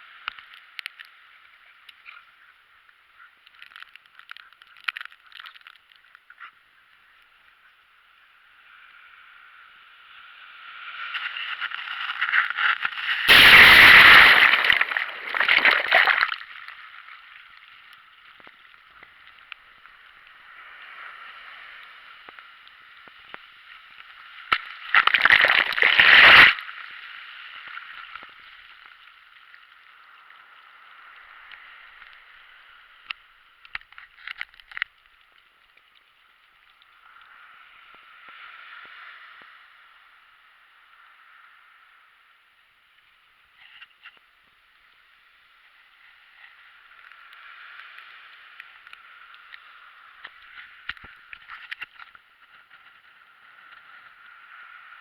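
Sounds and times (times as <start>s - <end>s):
seawater sloshing and splashing: 13.3s - 16.7s, 24.8s - 26.6s.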